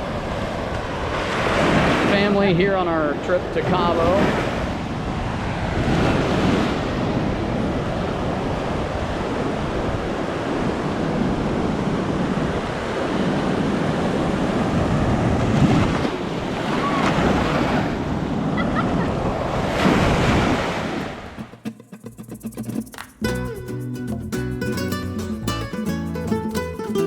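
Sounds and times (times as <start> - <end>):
wind buffeting microphone: 0.0 - 21.6
ocean waves breaking: 0.0 - 23.2.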